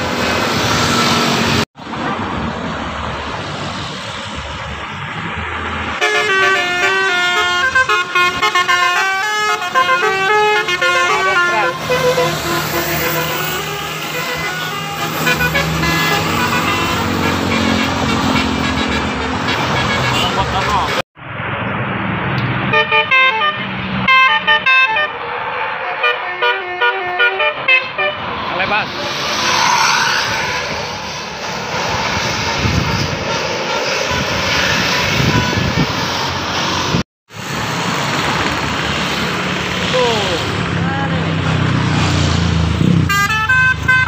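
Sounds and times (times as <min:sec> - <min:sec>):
road traffic: 0:00.0 - 0:44.0
multi-tone musical bus horn: 0:06.0 - 0:21.0, 0:22.7 - 0:25.2, 0:25.9 - 0:28.3, 0:32.2 - 0:36.1, 0:42.9 - 0:44.0.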